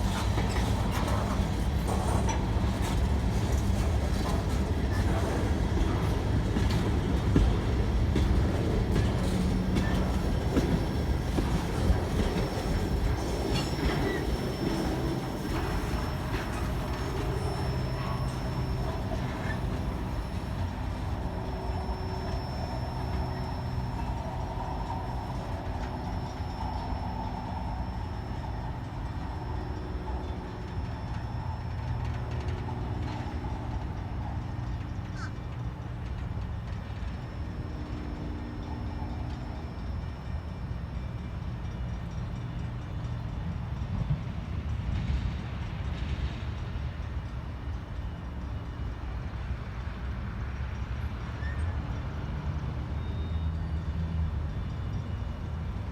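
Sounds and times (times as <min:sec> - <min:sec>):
train cars rumbling past: 0:00.0 - 0:55.9
thin wheel squeal: 0:09.0 - 0:31.7.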